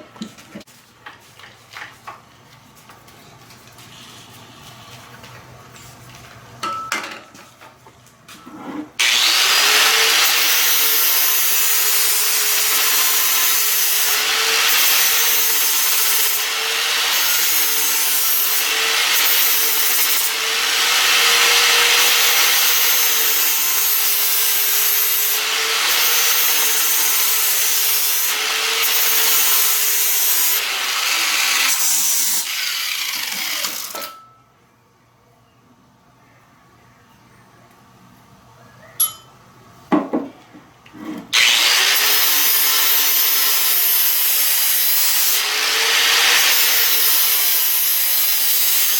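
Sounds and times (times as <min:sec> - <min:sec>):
angle grinder sanding metal: 0:09.0 - 0:34.1, 0:41.4 - 0:48.9.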